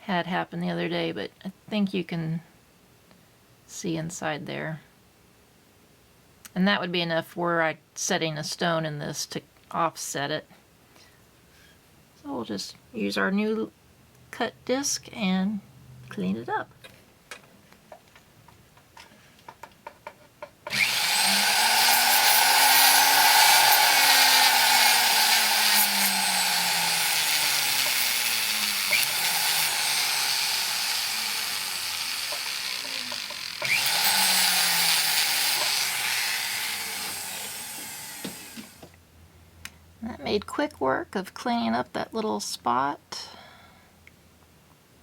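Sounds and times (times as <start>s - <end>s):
rotary tool grinding: 20.7s - 38.8s.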